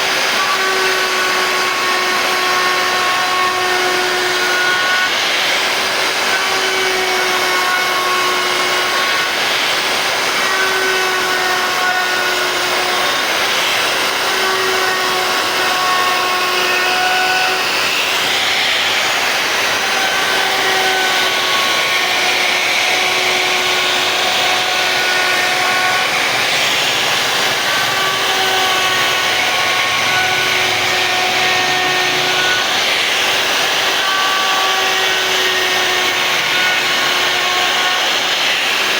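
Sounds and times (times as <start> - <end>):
bit cutting wood: 0.0 - 38.9
router spindle whining: 0.0 - 38.9.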